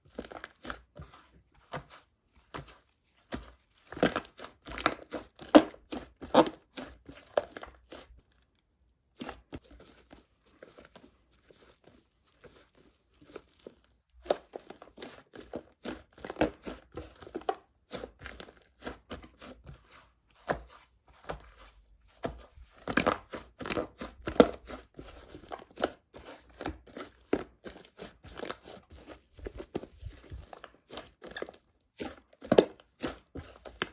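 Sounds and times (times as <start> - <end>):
hands squishing slime: 0.0 - 33.9.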